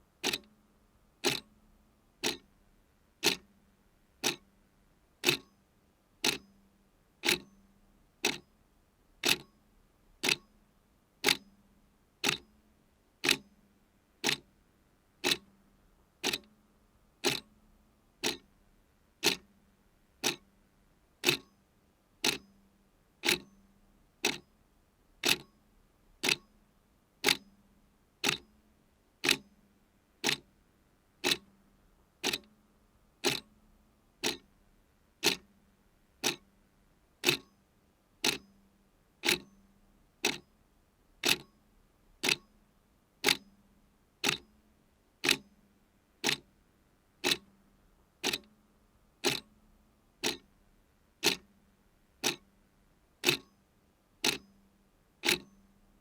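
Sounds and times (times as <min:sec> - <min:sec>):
clock ticking: 0:00.2 - 0:00.5, 0:01.2 - 0:01.5, 0:02.2 - 0:02.4, 0:03.2 - 0:03.4, 0:04.2 - 0:04.4, 0:05.2 - 0:05.5, 0:06.2 - 0:06.4, 0:09.2 - 0:09.5, 0:10.2 - 0:10.4, 0:12.2 - 0:12.4, 0:13.2 - 0:13.4, 0:14.2 - 0:14.4, 0:15.2 - 0:15.4, 0:16.2 - 0:16.5, 0:17.2 - 0:17.5, 0:18.2 - 0:18.4, 0:19.2 - 0:19.4, 0:20.2 - 0:20.4, 0:21.2 - 0:21.5, 0:22.2 - 0:22.4, 0:23.2 - 0:23.5, 0:25.2 - 0:25.5, 0:26.2 - 0:26.4, 0:28.2 - 0:28.4, 0:29.2 - 0:29.4, 0:30.2 - 0:30.4, 0:31.2 - 0:31.5, 0:32.2 - 0:32.5, 0:33.2 - 0:33.5, 0:34.2 - 0:34.5, 0:35.2 - 0:35.5, 0:36.2 - 0:36.4, 0:37.2 - 0:37.5, 0:38.2 - 0:38.4, 0:39.2 - 0:39.5, 0:40.2 - 0:40.4, 0:41.2 - 0:41.5, 0:42.2 - 0:42.5, 0:43.2 - 0:43.4, 0:44.2 - 0:44.4, 0:45.2 - 0:45.4, 0:46.2 - 0:46.4, 0:47.2 - 0:47.5, 0:48.2 - 0:48.5, 0:49.2 - 0:49.5, 0:50.2 - 0:50.5, 0:51.2 - 0:51.5, 0:52.2 - 0:52.4, 0:53.2 - 0:53.5, 0:54.2 - 0:54.5, 0:55.2 - 0:55.6.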